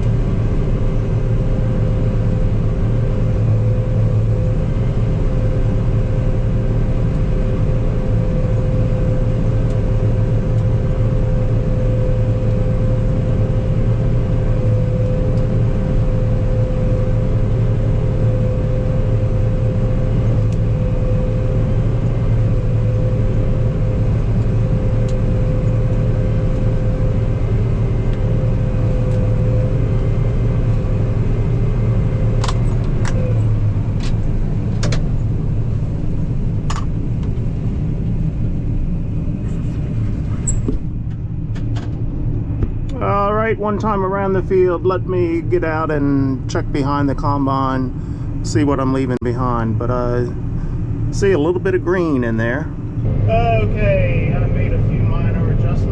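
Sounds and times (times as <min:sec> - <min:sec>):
combine harvester drone: 0:00.0 - 0:55.9
steady machine whine: 0:00.0 - 0:55.9.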